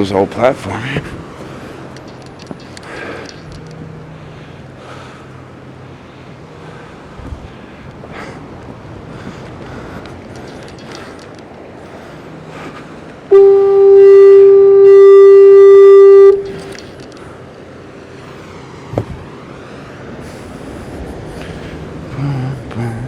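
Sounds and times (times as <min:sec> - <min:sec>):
fog horn blast: 0:13.3 - 0:16.9.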